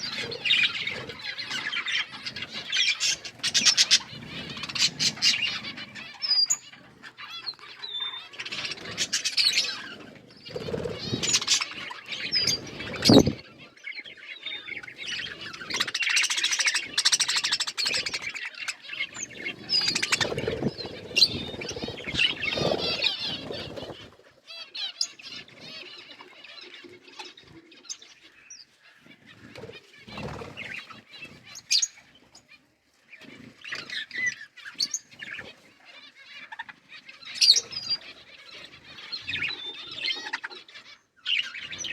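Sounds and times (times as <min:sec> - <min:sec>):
budgerigars chirping: 0:00.0 - 0:26.1.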